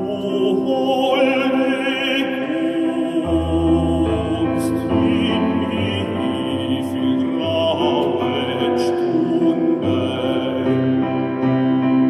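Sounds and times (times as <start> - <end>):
baritone singing: 0.0 - 12.0
piano accompaniment: 0.0 - 12.0.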